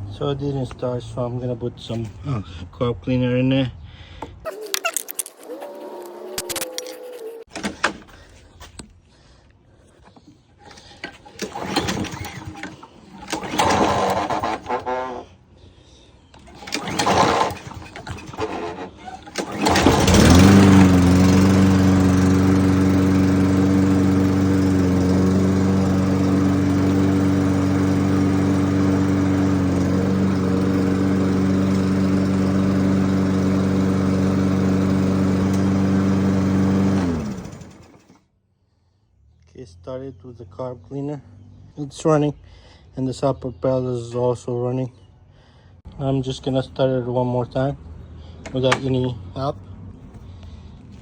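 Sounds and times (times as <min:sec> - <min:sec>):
lawn mower engine cranking: 0:04.5 - 0:08.9, 0:10.6 - 0:15.3, 0:16.3 - 0:38.2
lawn mower engine running: 0:10.6 - 0:15.2, 0:16.4 - 0:38.2.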